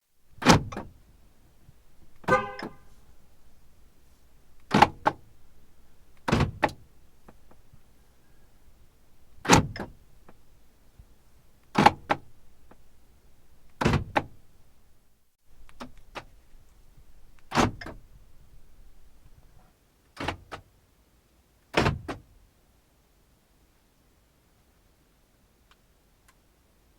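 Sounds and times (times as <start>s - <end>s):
car central locking clunking: 0.3s - 7.9s, 8.6s - 10.6s, 11.6s - 12.9s, 13.5s - 14.5s, 17.3s - 19.0s.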